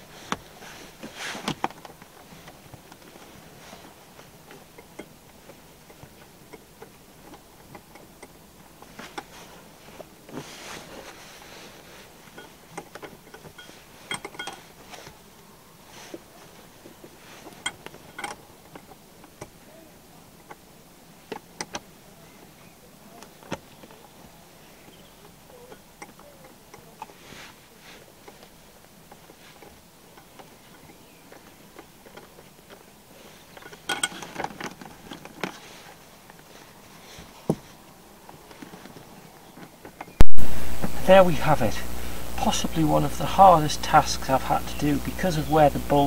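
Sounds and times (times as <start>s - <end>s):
scraping rustle: 0.0s - 19.4s, 23.2s - 46.0s
clicks and knocks of tools: 0.3s - 9.4s, 12.3s - 15.2s, 17.4s - 19.6s, 33.5s - 36.4s.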